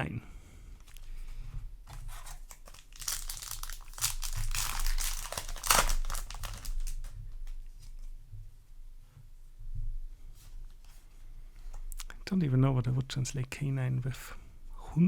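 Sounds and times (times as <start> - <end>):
foil wrapper crinkling and tearing: 1.9 - 7.2.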